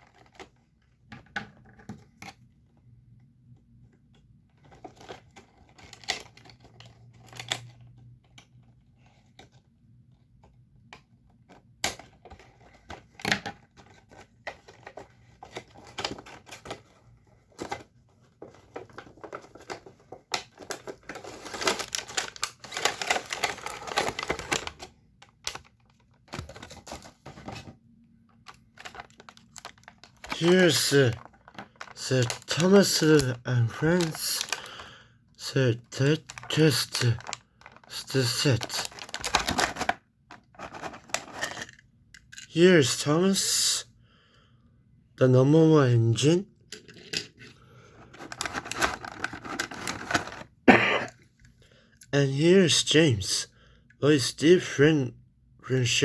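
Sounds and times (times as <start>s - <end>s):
packaging crinkling and rustling: 0.0s - 2.5s, 4.5s - 9.7s, 10.8s - 35.0s, 36.0s - 42.5s, 46.7s - 51.5s.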